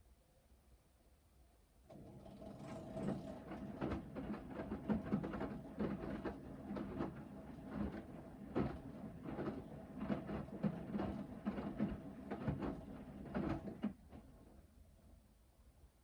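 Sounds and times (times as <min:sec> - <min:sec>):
washing machine motor hum: 0:01.9 - 0:13.9
soft knocks of tumbling washload: 0:02.3 - 0:14.5.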